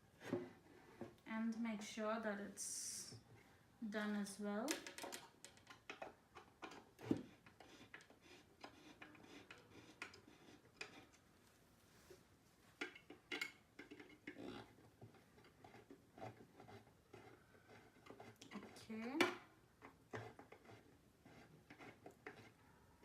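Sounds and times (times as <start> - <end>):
furniture fittings clicks and knocks: 4.7 - 7.2.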